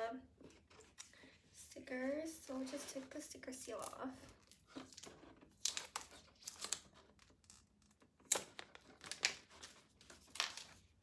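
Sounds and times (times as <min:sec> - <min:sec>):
sticker seals ripping and crinkling: 0:03.7 - 0:10.8.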